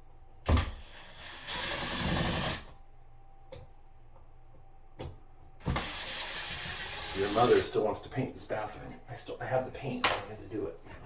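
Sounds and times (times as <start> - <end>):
power drill whirring: 0.5 - 2.7, 5.6 - 7.6.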